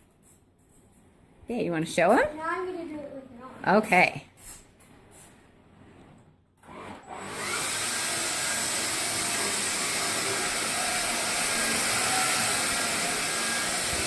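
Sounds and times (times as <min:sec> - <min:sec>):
vacuum cleaner whirring: 0:06.6 - 0:14.0.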